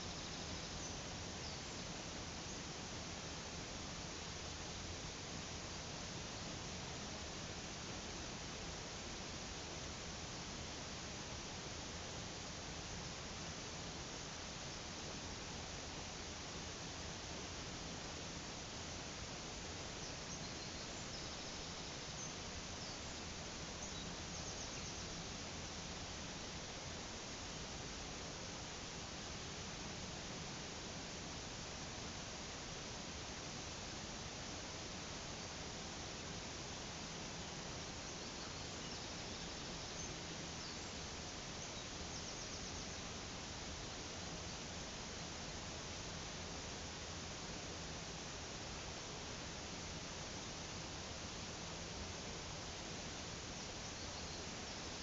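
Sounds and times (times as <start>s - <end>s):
faint high bird chirps: 0.0s - 2.6s, 20.0s - 25.2s, 38.0s - 43.1s, 53.6s - 55.0s.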